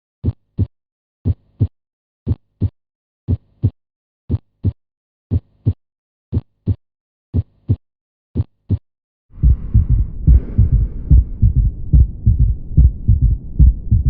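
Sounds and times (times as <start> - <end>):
heartbeat lub-dub: 8.4 - 8.8, 9.4 - 14.0.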